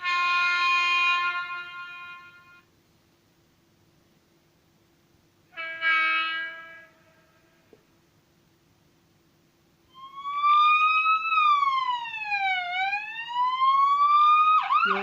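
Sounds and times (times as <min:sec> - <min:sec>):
faint hum: 0:06.5 - 0:15.0
police siren wailing: 0:09.9 - 0:15.0.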